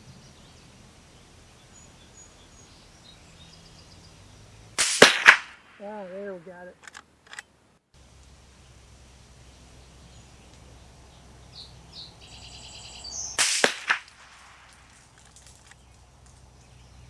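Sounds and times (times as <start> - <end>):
rifle shot: 4.8 - 5.8, 13.4 - 15.0
sharp crack: 4.8 - 6.2, 13.3 - 16.5
bird chirping and trilling: 11.1 - 13.4.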